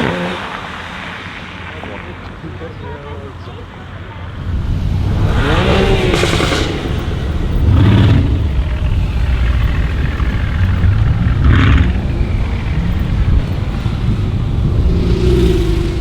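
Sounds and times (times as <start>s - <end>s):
car exhaust revving: 4.2s - 16.0s.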